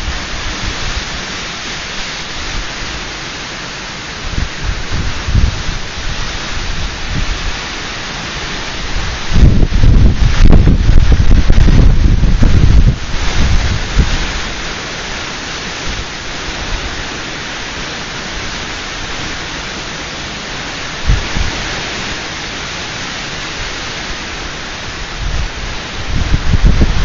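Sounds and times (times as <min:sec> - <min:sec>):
heavy rain hissing: 0:00.0 - 0:27.0
wind buffeting microphone: 0:04.2 - 0:07.8, 0:08.4 - 0:14.8, 0:21.0 - 0:22.8, 0:23.6 - 0:27.0.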